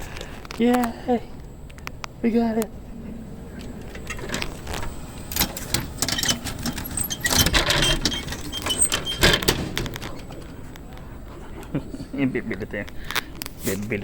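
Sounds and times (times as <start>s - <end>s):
vending machine clicks and bangs: 5.3s - 10.6s.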